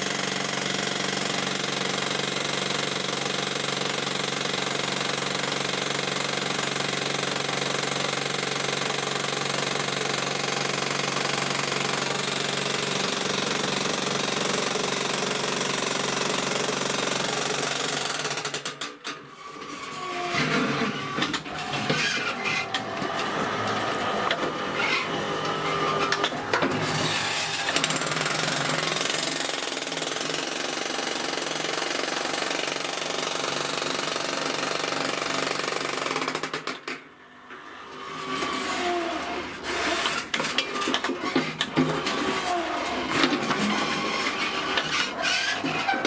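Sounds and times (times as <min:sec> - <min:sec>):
jackhammer hammering: 0:00.0 - 0:19.0, 0:20.4 - 0:37.0, 0:39.7 - 0:46.0.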